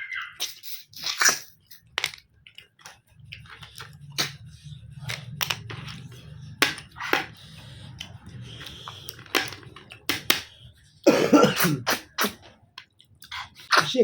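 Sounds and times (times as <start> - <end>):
slurps and clicks of eating snails: 0.4 - 11.0, 11.8 - 14.0
loud cough: 11.1 - 12.4.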